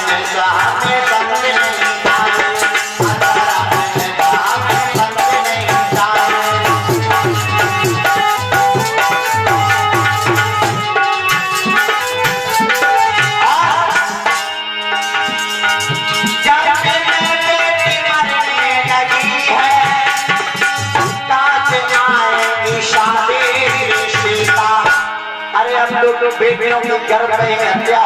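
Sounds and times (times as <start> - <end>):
tabla rhythm: 0.0 - 28.0
sustained melody line: 1.9 - 18.5.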